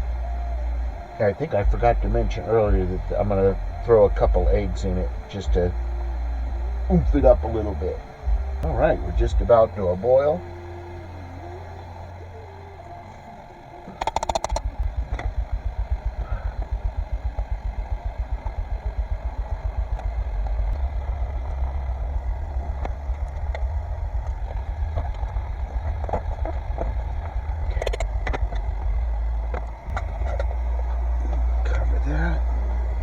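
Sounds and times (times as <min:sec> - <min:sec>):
water boiling hard in a pot: 0:13.9 - 0:33.0.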